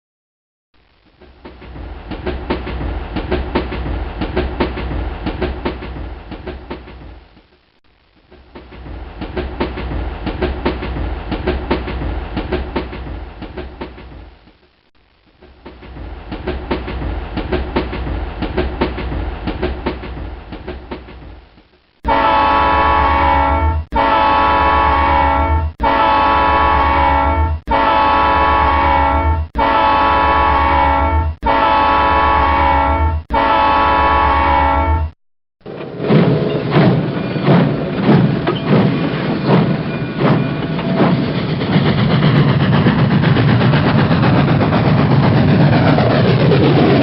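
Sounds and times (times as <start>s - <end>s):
train rumbling along track: 1.0s - 7.6s, 8.2s - 14.6s, 15.4s - 47.0s
train horn blasts: 22.0s - 35.2s
wheels clattering over rail joints: 35.6s - 43.6s.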